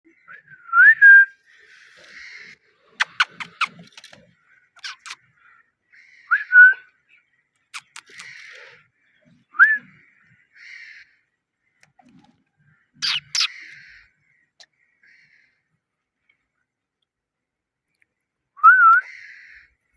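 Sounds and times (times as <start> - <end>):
parrot raspy chirps: 2.9 - 4.1, 4.8 - 5.2, 7.7 - 8.8, 13.0 - 13.9
sharp clicks: 3.0 - 4.2, 7.8 - 8.6
parrot whistling and chirping: 13.0 - 13.5.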